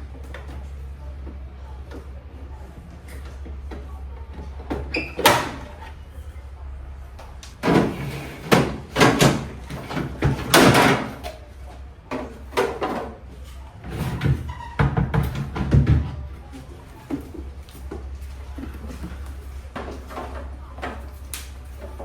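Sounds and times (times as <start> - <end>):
refrigerator drawers knocking and sliding: 7.6 - 11.3, 13.8 - 16.4.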